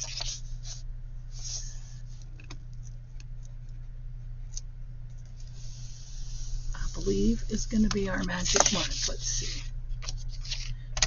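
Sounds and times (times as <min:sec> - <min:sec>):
paper rustle: 0:00.0 - 0:00.8, 0:08.3 - 0:09.4, 0:10.0 - 0:10.8
steady low hum: 0:00.0 - 0:11.0.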